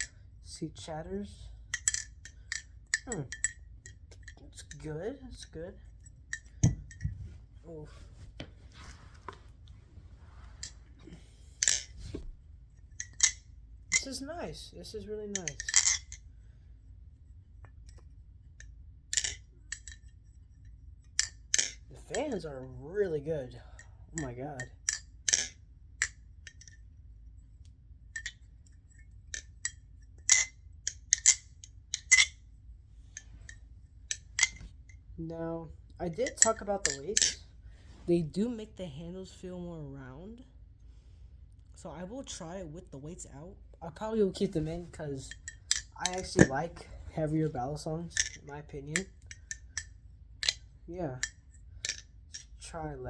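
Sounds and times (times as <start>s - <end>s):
balisong handles clicking: 1.7s - 4.9s, 13.0s - 14.2s, 33.1s - 34.8s, 36.2s - 37.5s, 44.4s - 52.6s
butterfly knife handles clacking: 1.7s - 7.1s, 10.6s - 12.2s, 13.0s - 14.4s, 15.3s - 16.2s, 17.9s - 20.1s, 21.2s - 23.2s, 24.2s - 26.8s, 28.2s - 32.4s, 33.1s - 34.8s, 36.2s - 37.5s, 44.4s - 52.6s.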